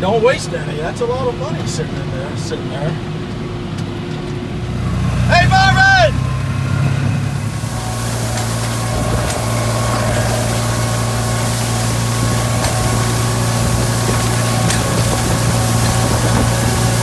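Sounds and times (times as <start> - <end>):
tractor engine humming: 0.0 - 17.0
baler rushing hiss: 7.3 - 17.0.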